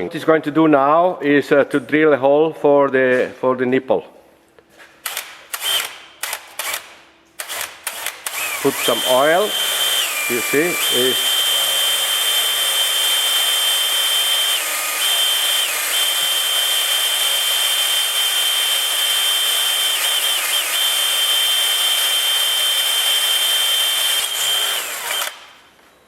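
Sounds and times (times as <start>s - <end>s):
power drill whining: 5.5s - 6.8s, 7.4s - 25.6s.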